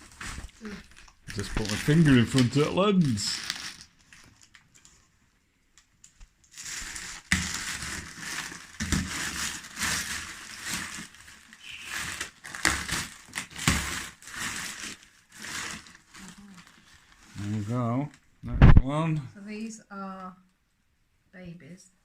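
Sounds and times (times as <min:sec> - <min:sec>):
packaging rustling and crinkling: 0:00.0 - 0:05.1, 0:06.0 - 0:18.2.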